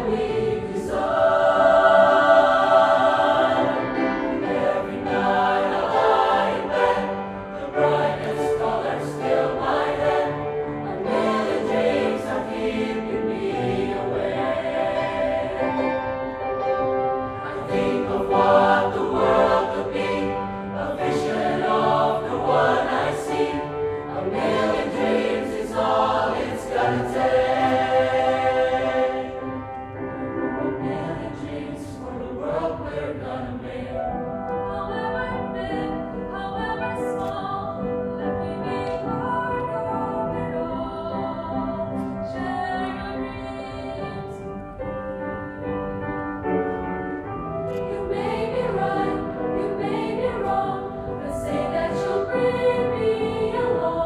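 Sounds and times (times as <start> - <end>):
choir singing: 0.0 - 54.0.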